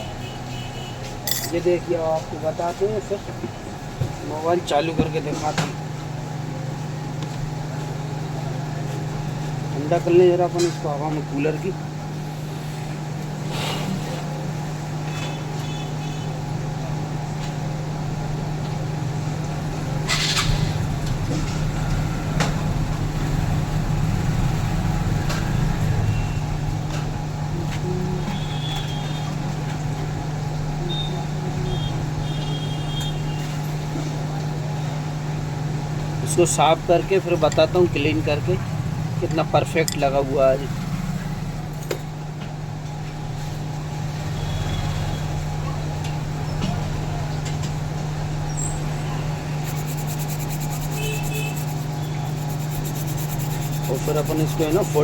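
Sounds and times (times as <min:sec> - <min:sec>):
electric fan motor humming: 0:15.6 - 0:44.2, 0:45.0 - 0:55.0
faint fast scratching: 0:49.5 - 0:55.0.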